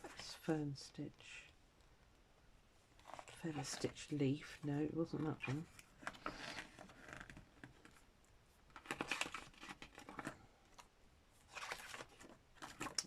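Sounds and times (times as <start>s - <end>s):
book pages turning: 3.0s - 8.1s, 8.7s - 13.0s.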